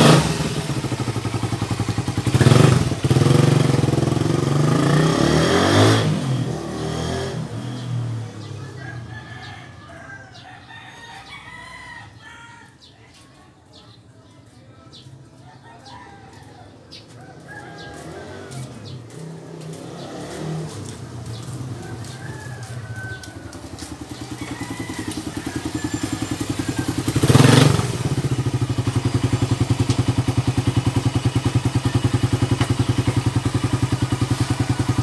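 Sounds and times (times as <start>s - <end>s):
motorcycle engine idling: 0.0s - 5.0s, 18.8s - 35.0s.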